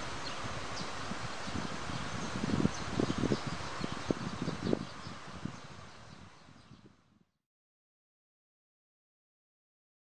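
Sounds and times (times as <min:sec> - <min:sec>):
wind buffeting microphone: 0:00.0 - 0:07.3.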